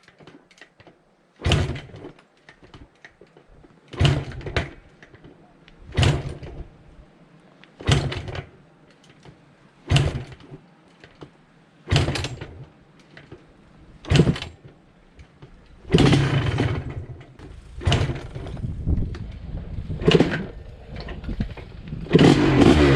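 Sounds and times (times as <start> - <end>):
motorcycle engine kick-start: 1.4 - 2.8, 3.9 - 6.7, 7.8 - 8.6, 9.8 - 11.2, 11.9 - 13.4, 14.0 - 14.8, 15.8 - 22.9.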